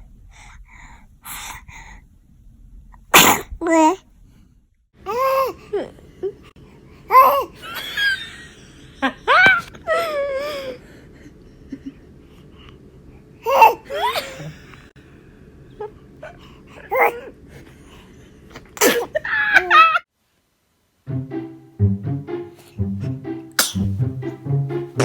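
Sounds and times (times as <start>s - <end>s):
baby laughing and babbling: 7.1s - 7.6s, 13.4s - 14.4s.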